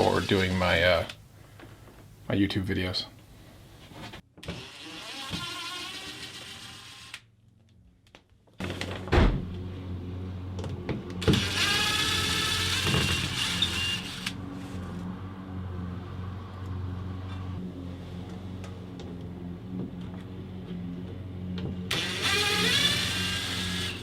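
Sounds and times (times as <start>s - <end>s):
cordless drill whining: 4.4s - 7.3s, 11.2s - 14.7s, 21.9s - 24.0s
steady low hum: 14.0s - 24.0s.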